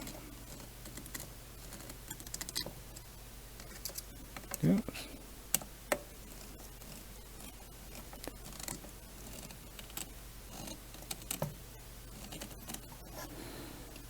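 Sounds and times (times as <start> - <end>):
small parts clicking and tapping: 0.0 - 4.7, 5.5 - 12.9.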